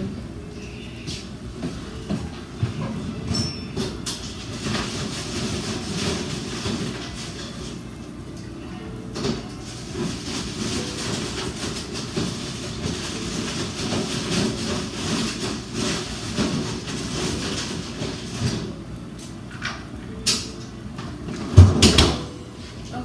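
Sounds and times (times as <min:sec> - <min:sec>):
kitchen appliance rumbling: 0:00.0 - 0:23.0.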